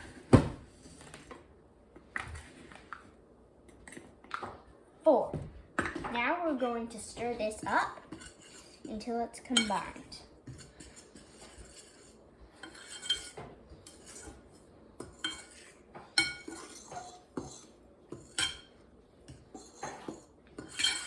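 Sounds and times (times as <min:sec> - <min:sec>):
utensil scraping mixing bowl: 0:06.2 - 0:21.0
utensil clinking against bowl: 0:19.3 - 0:21.0.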